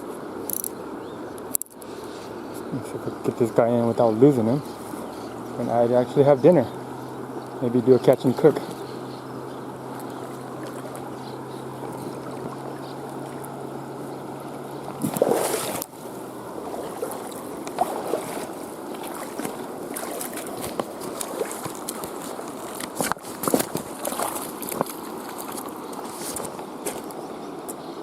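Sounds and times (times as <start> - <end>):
low steady hum: 0.0 - 28.0
river water rushing: 0.0 - 28.0
water splash: 14.9 - 16.0, 16.6 - 25.7.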